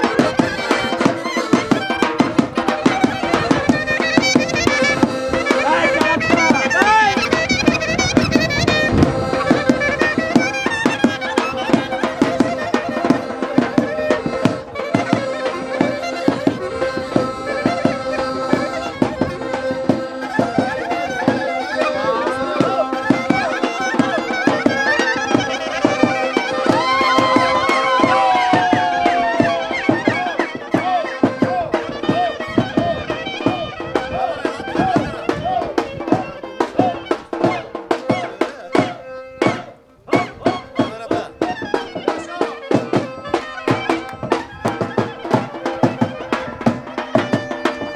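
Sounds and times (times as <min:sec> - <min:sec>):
drum beat: 0:00.0 - 0:47.9
wind instrument melody: 0:00.0 - 0:47.9.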